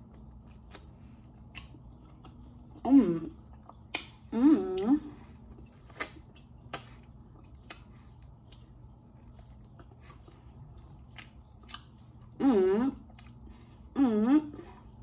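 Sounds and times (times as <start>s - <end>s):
chewing and biting food: 0.0s - 15.0s
person humming: 4.3s - 5.1s, 12.4s - 13.0s, 14.0s - 14.8s.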